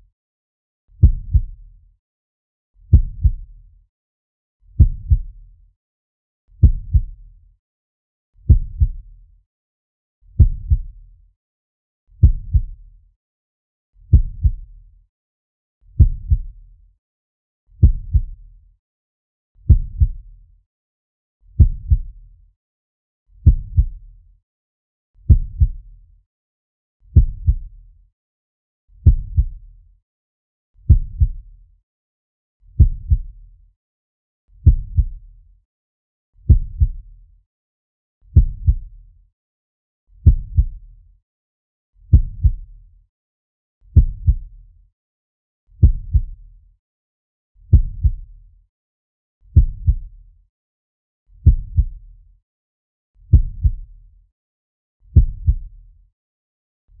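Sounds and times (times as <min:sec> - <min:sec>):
heartbeat double thump: 0:01.0 - 0:01.5, 0:02.9 - 0:03.4, 0:04.8 - 0:05.3, 0:06.6 - 0:07.1, 0:08.5 - 0:09.0, 0:10.4 - 0:10.9, 0:12.2 - 0:12.7, 0:16.0 - 0:16.5, 0:17.8 - 0:18.3, 0:19.7 - 0:20.2, 0:21.6 - 0:22.1, 0:25.3 - 0:25.8, 0:27.2 - 0:27.6, 0:30.9 - 0:31.4, 0:32.8 - 0:33.3, 0:36.5 - 0:37.0, 0:38.4 - 0:38.8, 0:42.1 - 0:42.6, 0:44.0 - 0:44.4, 0:45.8 - 0:46.3, 0:47.7 - 0:48.2, 0:49.6 - 0:50.1, 0:51.4 - 0:51.9, 0:53.3 - 0:53.8, 0:55.2 - 0:55.6.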